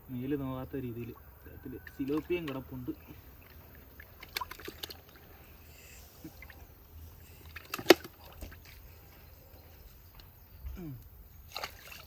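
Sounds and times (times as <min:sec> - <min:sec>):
water sloshing and trickling: 0:00.6 - 0:12.0
sharp water smack: 0:04.1 - 0:05.2, 0:07.5 - 0:08.5, 0:11.5 - 0:12.0.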